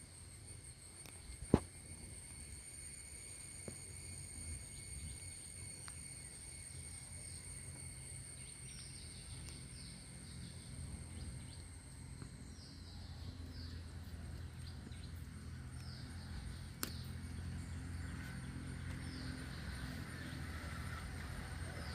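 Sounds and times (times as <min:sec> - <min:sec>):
steady low rumble: 0:00.0 - 0:21.9
small bird chirping: 0:04.6 - 0:21.9.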